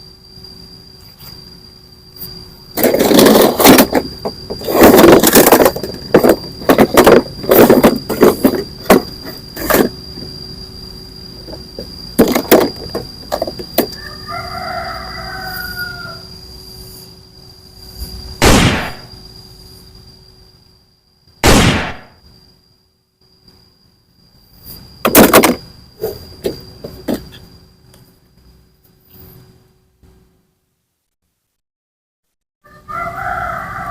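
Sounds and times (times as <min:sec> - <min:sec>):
rustling and scraping: 0:02.2 - 0:10.4, 0:11.4 - 0:14.0, 0:24.8 - 0:27.6
rooster crowing: 0:13.8 - 0:16.4, 0:32.6 - 0:33.9.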